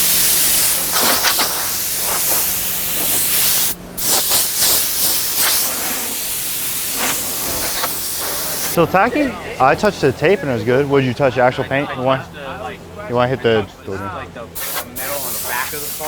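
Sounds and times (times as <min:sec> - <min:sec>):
paint spray hissing: 0:00.0 - 0:08.8, 0:14.6 - 0:16.0.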